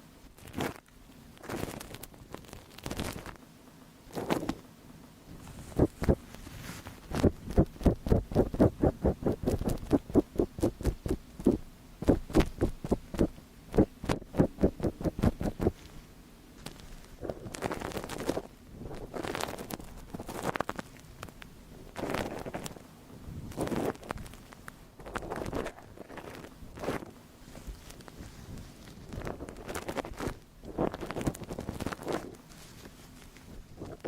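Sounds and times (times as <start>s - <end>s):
rubbing on microphone: 5.3s - 34.0s
short scratchy strokes: 5.4s - 16.0s.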